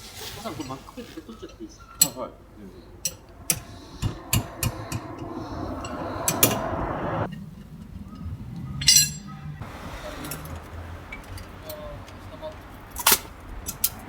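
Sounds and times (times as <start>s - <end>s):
rushing noise: 2.5s - 7.8s.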